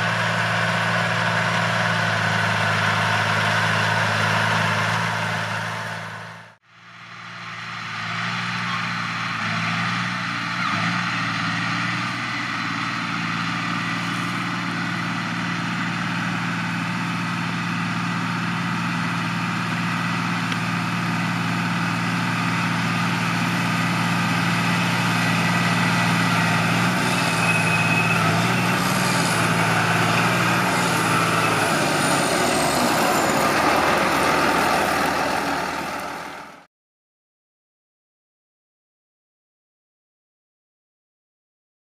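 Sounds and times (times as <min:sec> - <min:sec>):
tractor diesel engine running: 0:00.0 - 0:36.7
rushing noise: 0:24.0 - 0:36.6.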